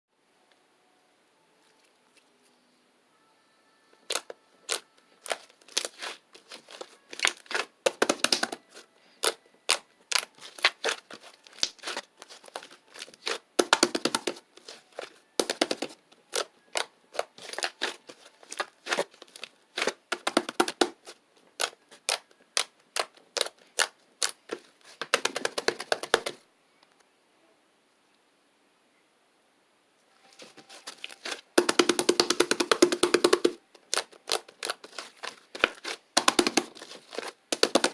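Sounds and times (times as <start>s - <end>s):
slime popping and crackling: 4.1s - 26.4s, 30.4s - 37.9s.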